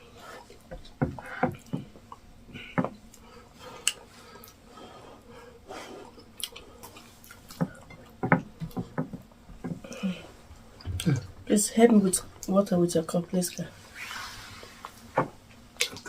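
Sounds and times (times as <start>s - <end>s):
wet chewing and mouth sounds: 5.8s - 9.2s.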